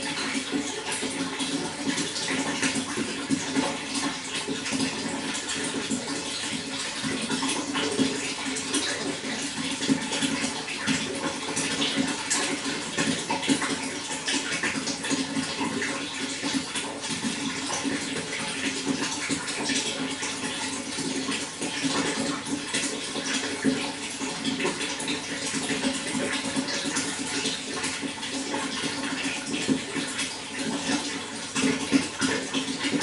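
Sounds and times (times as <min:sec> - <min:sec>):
running water flowing: 0:00.0 - 0:33.0.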